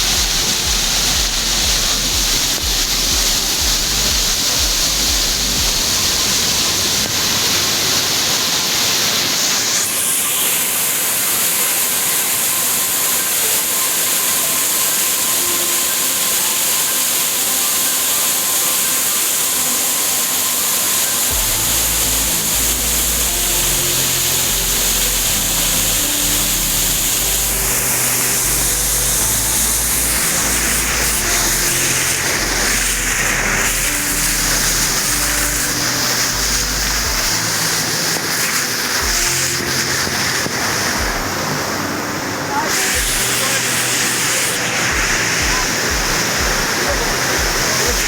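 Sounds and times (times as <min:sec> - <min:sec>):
background music with bass line: 0:00.0 - 0:06.4, 0:21.3 - 0:37.9, 0:39.0 - 0:40.0, 0:44.9 - 0:48.0
waterfall rushing: 0:00.0 - 0:48.0.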